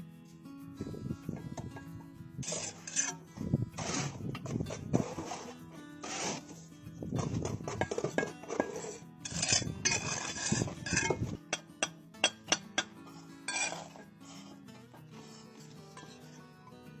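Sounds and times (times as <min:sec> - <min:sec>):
trowel scraping mortar: 0:02.4 - 0:17.0
bricks clinking into place: 0:07.2 - 0:14.0.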